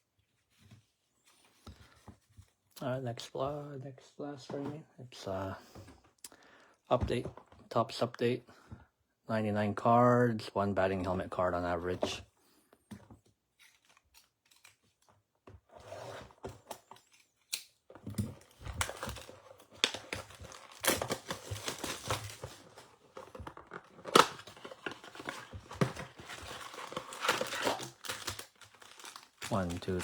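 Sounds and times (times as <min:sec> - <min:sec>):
wrapping crinkling and tearing: 0:18.2 - 0:30.0
foil packs rustling: 0:18.3 - 0:30.0.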